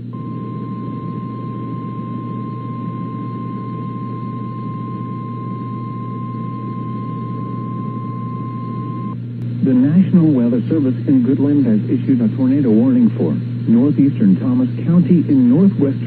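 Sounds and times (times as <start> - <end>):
low hum: 0.0 - 16.0
steady high alarm tone: 0.1 - 9.2
radio hiss: 9.4 - 16.0.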